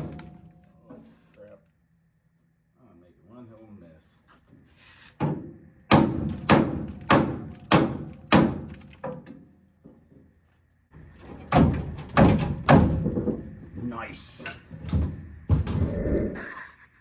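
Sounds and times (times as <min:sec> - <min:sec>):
hammer striking metal: 0:05.9 - 0:08.8.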